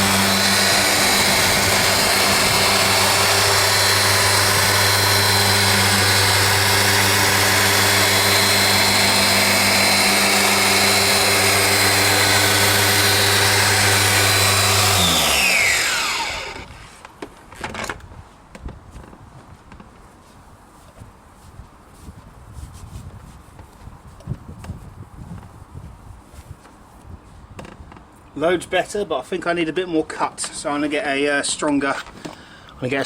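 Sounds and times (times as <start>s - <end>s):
polisher winding down: 0.0s - 17.0s
electric polisher running: 0.0s - 17.1s.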